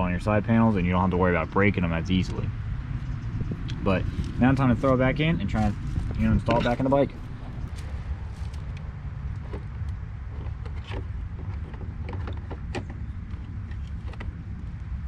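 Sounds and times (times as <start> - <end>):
steady low rumble: 0.0 - 15.0
plastic parts clicking and creaking: 8.4 - 14.4.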